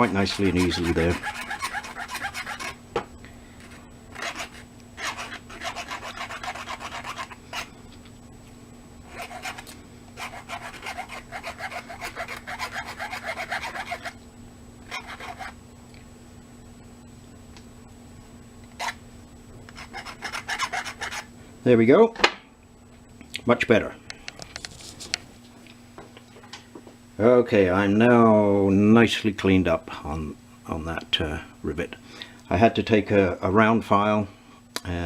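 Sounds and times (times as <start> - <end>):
hand file scraping rivet: 0.0 - 2.8, 4.2 - 7.4, 9.1 - 14.2, 19.7 - 21.3.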